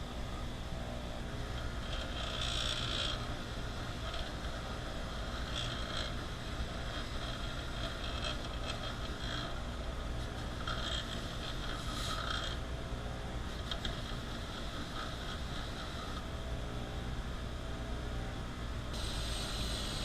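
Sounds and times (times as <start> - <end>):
motor running: 0.7 - 18.0, 18.9 - 20.0
wrench rasping and scraping: 1.6 - 12.6, 13.5 - 16.2.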